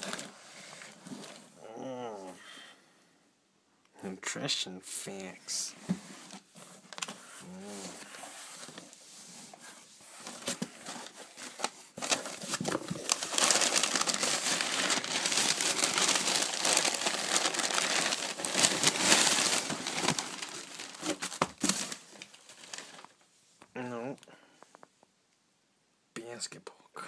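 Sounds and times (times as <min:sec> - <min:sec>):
plastic shrink wrap crinkling: 0:00.0 - 0:01.3, 0:10.1 - 0:23.2.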